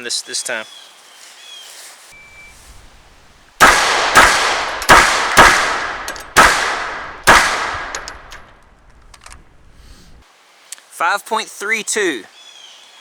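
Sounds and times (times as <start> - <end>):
pistol shots echoing: 3.6 - 8.5.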